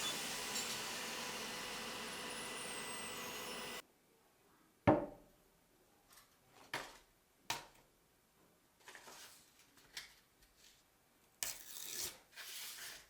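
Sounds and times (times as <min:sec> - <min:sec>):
small power tool whining: 0:00.0 - 0:03.8
tools knocking on workbench: 0:04.9 - 0:05.2.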